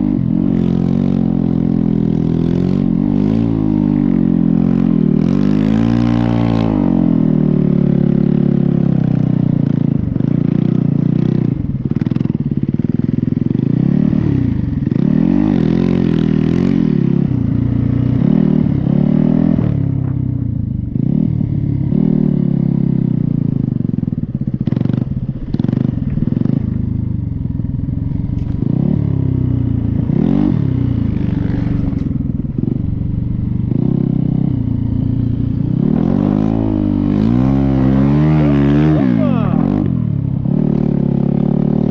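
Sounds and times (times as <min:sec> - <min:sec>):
dirt bike engine revving: 0:00.0 - 0:20.2, 0:20.9 - 0:41.9.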